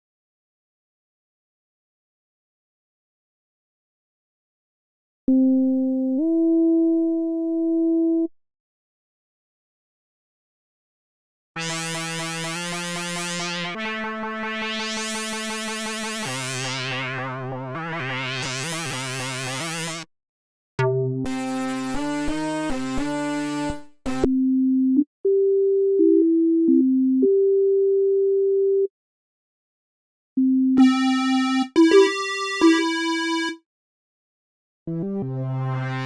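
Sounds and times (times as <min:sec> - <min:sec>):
synthesizer phrases: 0:30.8 - 0:33.6.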